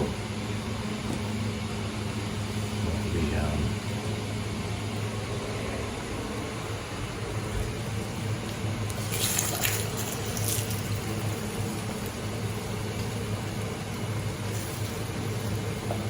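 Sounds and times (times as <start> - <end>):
steady low hum: 0.0 - 16.0
liquid pouring: 8.4 - 13.2.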